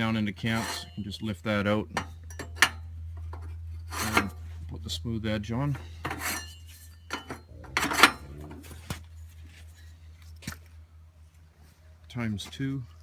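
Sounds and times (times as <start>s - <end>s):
steady low hum: 0.0s - 13.0s
metal clamp scraping clatter: 0.4s - 1.0s, 1.9s - 4.6s, 5.7s - 10.6s.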